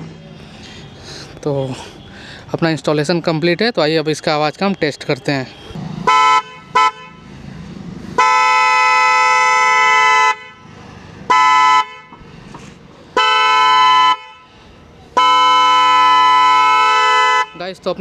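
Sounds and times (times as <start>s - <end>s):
trumpet car horn blasts: 5.5s - 7.2s, 8.2s - 10.7s, 11.3s - 12.2s, 13.2s - 14.5s, 15.2s - 17.7s.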